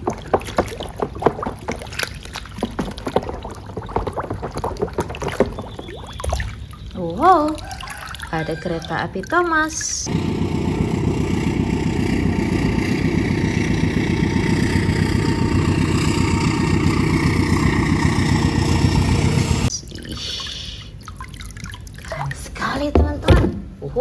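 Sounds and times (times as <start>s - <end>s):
water running onto a toy: 0.0s - 10.1s.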